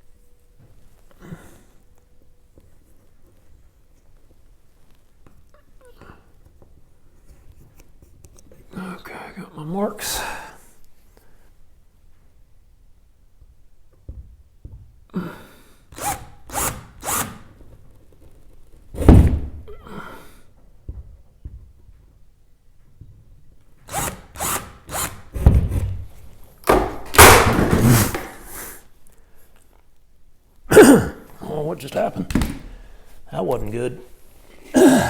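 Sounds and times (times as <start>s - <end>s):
power drill boring into wall: 15.9s - 17.7s, 23.8s - 25.9s, 26.7s - 28.6s.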